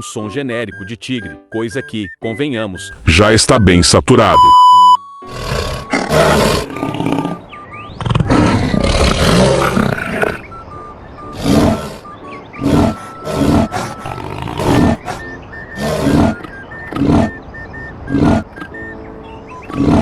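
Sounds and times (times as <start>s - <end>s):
soft background music: 0.0s - 3.9s, 4.6s - 20.0s
big cat roars: 5.3s - 7.4s, 8.0s - 10.4s, 12.6s - 15.2s, 19.7s - 20.0s.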